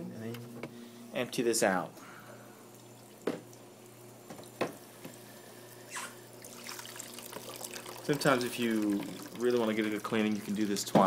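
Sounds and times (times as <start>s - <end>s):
low steady hum: 0.0s - 11.0s
water trickling and splashing: 6.4s - 10.8s.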